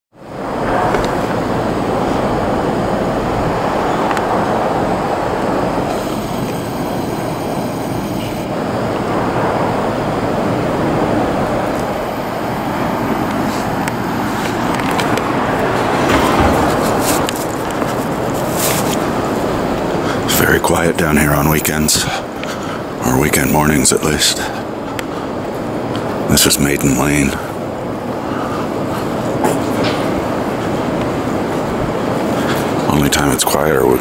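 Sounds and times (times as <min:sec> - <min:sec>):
faint high whine: 0:00.2 - 0:34.0
moving vehicle rumble and hiss: 0:08.2 - 0:34.0.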